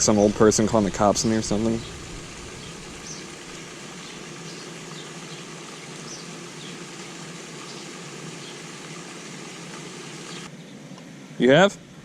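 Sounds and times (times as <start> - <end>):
runoff pouring into a pond: 1.0 - 10.5.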